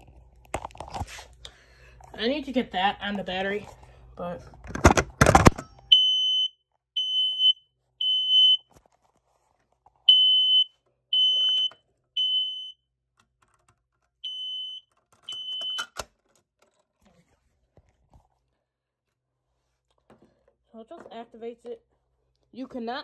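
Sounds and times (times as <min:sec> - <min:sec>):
smoke alarm beeping: 0:05.9 - 0:08.6, 0:10.1 - 0:12.8, 0:14.2 - 0:16.0.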